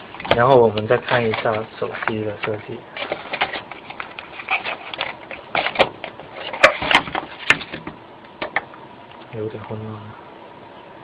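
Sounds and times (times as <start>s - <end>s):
packaging rustling and scraping: 0.4s - 7.9s.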